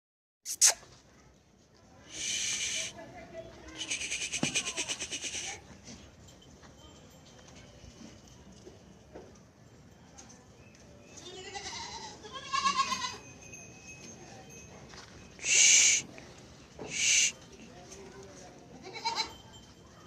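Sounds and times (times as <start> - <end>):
harsh hissy sounds: 0.5 - 0.8, 2.1 - 2.9, 15.4 - 16.0, 16.9 - 17.4
goats bleating: 11.3 - 13.2, 18.8 - 19.4.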